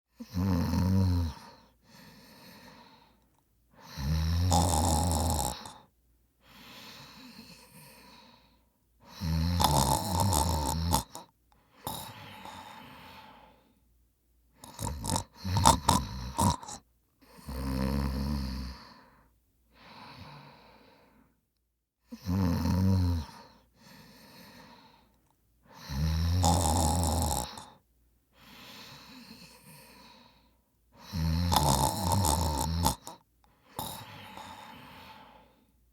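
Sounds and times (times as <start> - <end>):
person snoring: 0.2 - 3.2, 3.8 - 5.9, 9.1 - 13.6, 14.6 - 19.1, 22.1 - 25.1, 25.7 - 27.8, 28.4 - 30.4, 31.0 - 35.6
soft breaths: 1.3 - 4.1, 5.5 - 9.3, 11.0 - 13.9, 14.5 - 21.4, 23.2 - 26.0, 27.5 - 31.3, 32.0 - 35.9
short irregular snorts: 14.6 - 16.8, 31.0 - 35.6.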